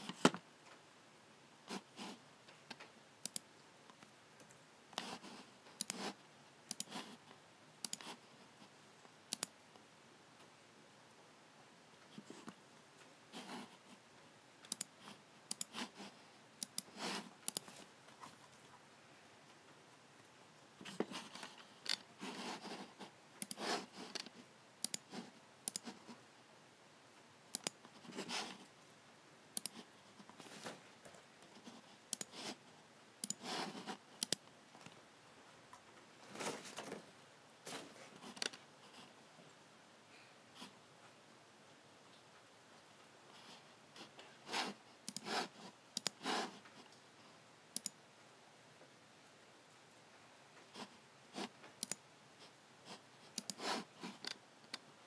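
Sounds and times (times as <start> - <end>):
computer mouse buttons clicking: 2.7 - 5.1, 5.8 - 6.1, 6.7 - 7.0, 7.8 - 8.1, 9.3 - 9.6, 14.6 - 15.8, 16.6 - 17.7, 23.4 - 26.0, 27.5 - 27.9, 29.6 - 29.8, 32.1 - 32.4, 33.2 - 34.4, 45.0 - 45.4, 46.0 - 46.2, 47.8 - 48.0, 51.8 - 52.0, 53.3 - 54.8
soft rubbing sounds: 29.8 - 32.8.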